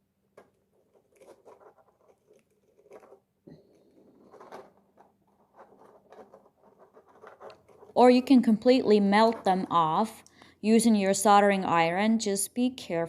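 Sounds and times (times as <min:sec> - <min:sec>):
plastic scales clicking and scratching: 0:00.4 - 0:08.0, 0:09.0 - 0:09.9.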